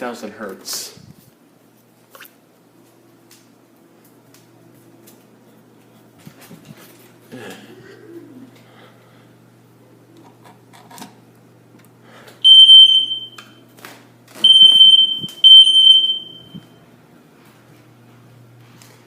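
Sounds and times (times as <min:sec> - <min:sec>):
fire alarm beeps: 0:12.4 - 0:13.6, 0:14.4 - 0:16.8.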